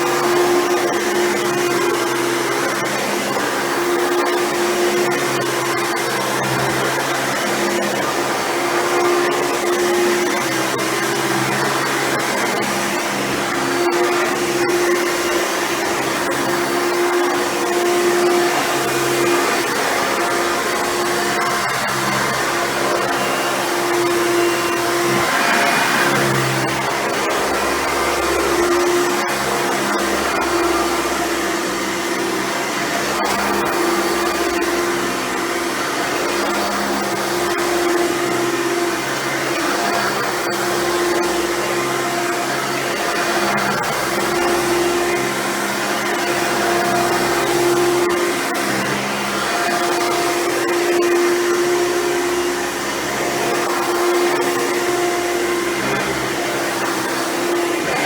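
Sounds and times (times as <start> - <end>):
vacuum cleaner running: 18.9 - 36.7, 44.1 - 58.0
vacuum cleaner whirring hum: 22.0 - 27.3.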